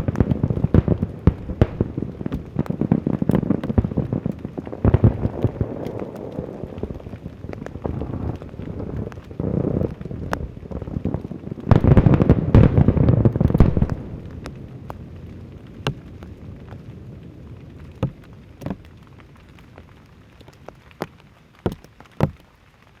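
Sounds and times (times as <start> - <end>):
fireworks booming and crackling: 0.0 - 22.4.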